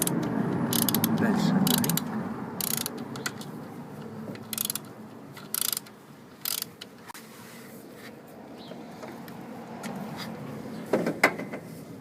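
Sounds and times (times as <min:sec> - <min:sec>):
ratchet wrench clicking: 0:00.0 - 0:03.5, 0:04.3 - 0:06.9.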